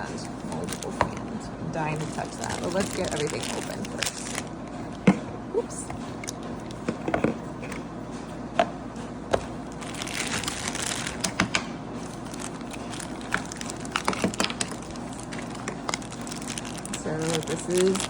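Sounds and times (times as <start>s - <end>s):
plastic packaging crinkling: 0.0s - 5.0s, 9.4s - 18.0s.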